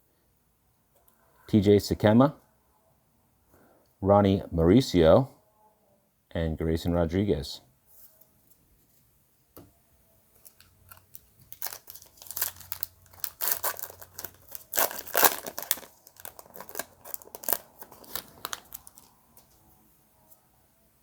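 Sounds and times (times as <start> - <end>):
foil wrapper tearing and crinkling: 10.4 - 19.6.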